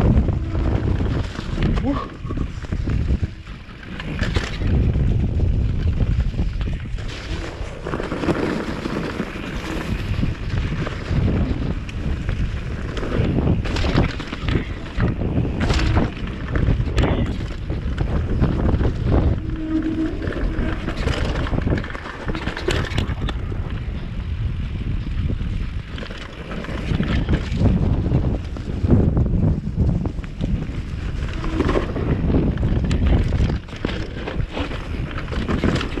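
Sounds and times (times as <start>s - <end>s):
mountain bike rattling: 0.0s - 36.0s
wind buffeting microphone: 0.0s - 36.0s.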